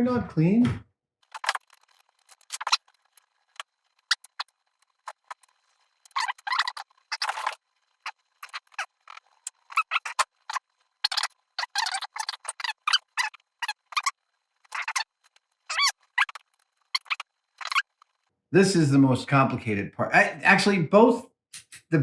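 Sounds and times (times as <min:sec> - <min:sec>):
short squeaks: 0:01.2 - 0:18.2.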